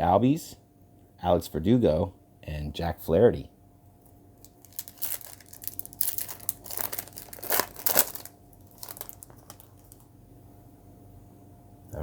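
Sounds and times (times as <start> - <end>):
plastic wrapper crinkling: 4.4 - 10.1.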